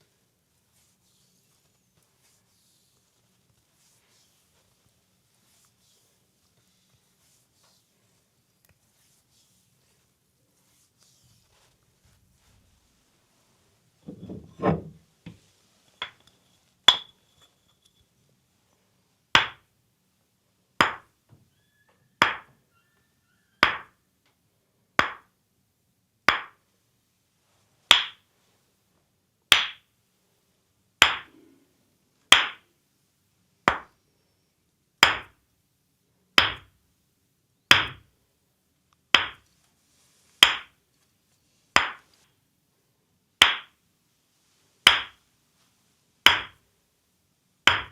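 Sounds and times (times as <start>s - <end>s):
rustle: 39.5s - 42.4s.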